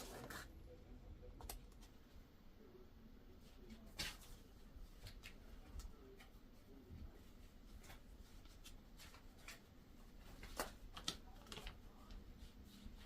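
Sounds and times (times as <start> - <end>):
rustling of record packaging: 7.7 - 13.0.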